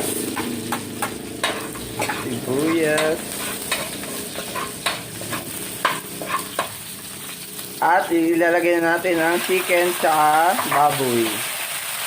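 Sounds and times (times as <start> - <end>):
garlic and onion sizzling in oil: 0.0 - 12.0
utensil scraping a pan: 0.3 - 6.8.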